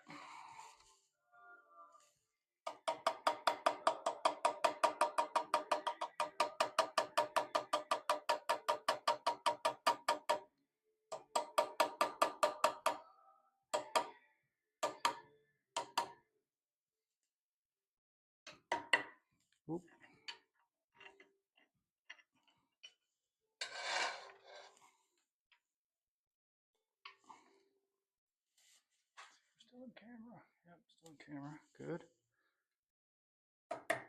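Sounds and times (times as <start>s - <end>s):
hammer tapping chisel on metal: 2.7s - 10.5s, 11.1s - 13.0s, 13.8s - 14.2s, 14.8s - 16.2s, 33.7s - 34.0s.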